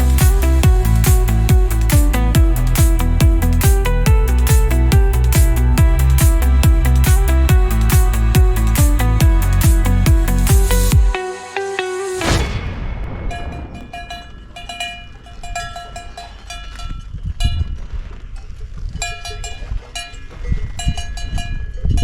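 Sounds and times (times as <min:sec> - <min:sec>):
steady low rumble: 0:00.0 - 0:17.3
cowbells clanking: 0:13.9 - 0:17.8, 0:18.4 - 0:22.0.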